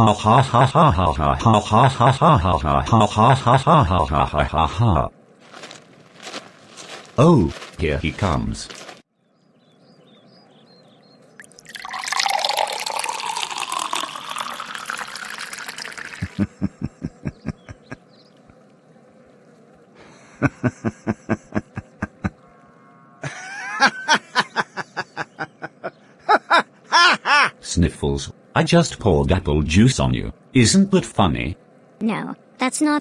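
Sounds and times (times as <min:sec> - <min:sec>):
liquid pouring and splashing: 0:11.4 - 0:16.5.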